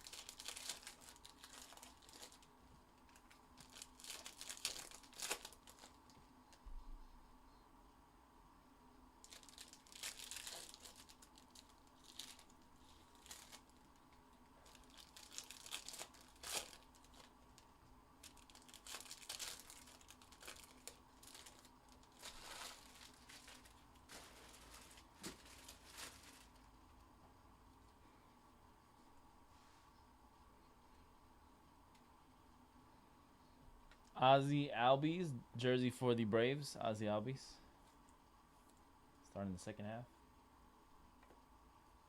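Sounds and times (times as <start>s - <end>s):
card wrappers crinkling and tearing: 0.0s - 6.2s, 9.2s - 14.0s, 14.6s - 26.7s.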